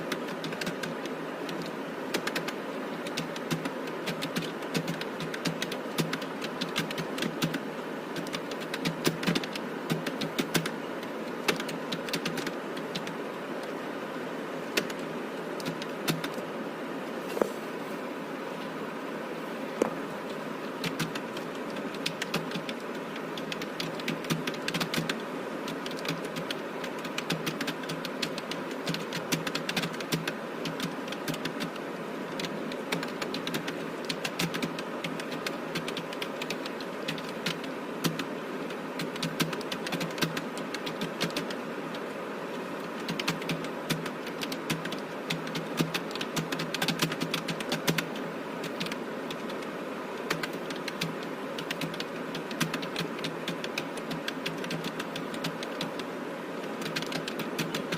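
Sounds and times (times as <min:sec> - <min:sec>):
keyboard typing clicks: 0:00.0 - 0:07.6, 0:08.2 - 0:13.7, 0:14.8 - 0:15.0, 0:15.6 - 0:16.4, 0:20.8 - 0:31.8, 0:32.4 - 0:38.3, 0:39.0 - 0:42.0, 0:42.9 - 0:49.7, 0:50.3 - 0:56.1, 0:56.8 - 0:57.9
steady background hum: 0:00.0 - 0:57.9.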